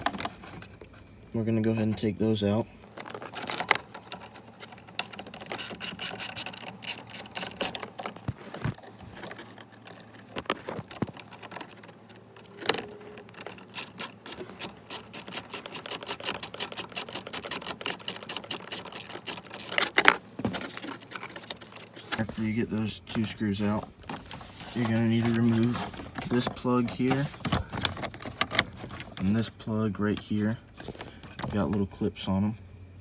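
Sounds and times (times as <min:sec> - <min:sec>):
hand ratchet clicking: 0:04.9 - 0:08.0, 0:13.3 - 0:20.2.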